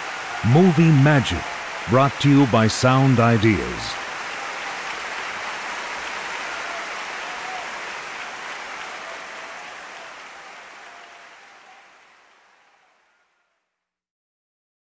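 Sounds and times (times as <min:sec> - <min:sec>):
audience applause: 0:00.0 - 0:13.4.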